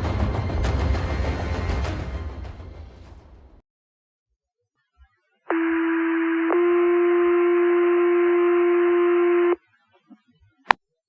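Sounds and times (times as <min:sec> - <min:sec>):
two-tone pager alert: 0:05.5 - 0:09.6.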